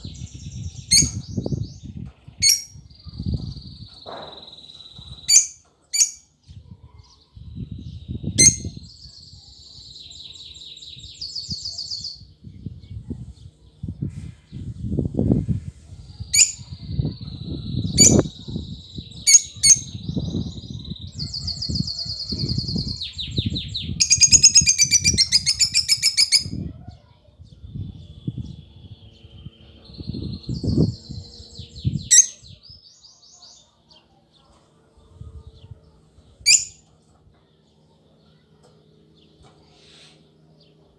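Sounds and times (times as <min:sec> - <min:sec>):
bird chirping and singing: 0:00.0 - 0:26.8, 0:27.4 - 0:40.9.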